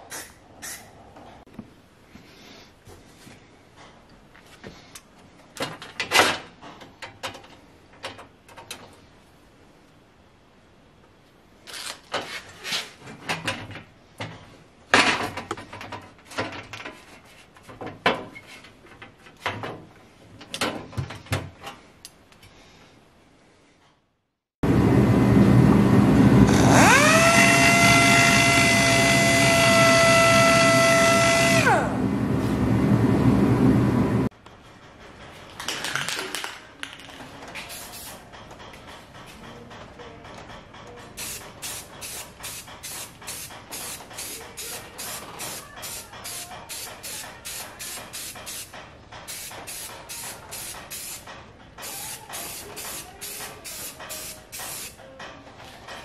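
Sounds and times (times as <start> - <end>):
power tool motor whine: 26.4 - 32.0.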